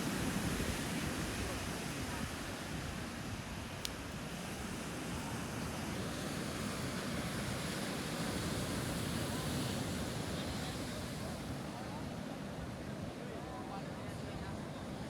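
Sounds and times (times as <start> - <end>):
surf washing onto beach: 0.0 - 15.0.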